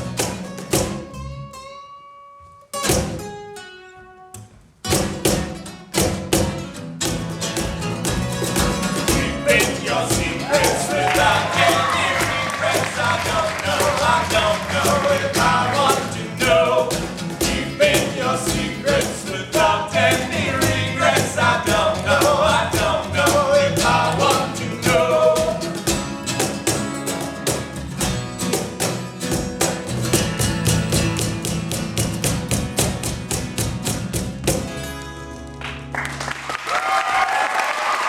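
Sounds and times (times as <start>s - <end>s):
live band with drums: 0.0s - 1.2s, 2.8s - 3.4s, 4.8s - 34.9s
person singing: 9.0s - 25.9s.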